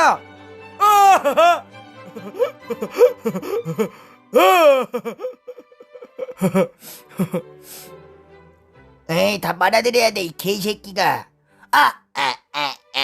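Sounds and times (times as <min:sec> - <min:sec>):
background music: 0:00.0 - 0:13.0
person laughing: 0:00.8 - 0:07.5, 0:11.8 - 0:13.0
person gasping and exclaiming: 0:02.8 - 0:05.4.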